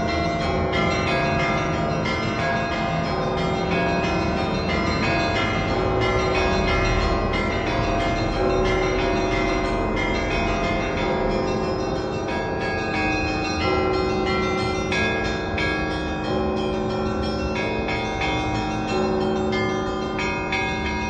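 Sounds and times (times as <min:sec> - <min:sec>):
church bells pealing: 0:00.0 - 0:21.0.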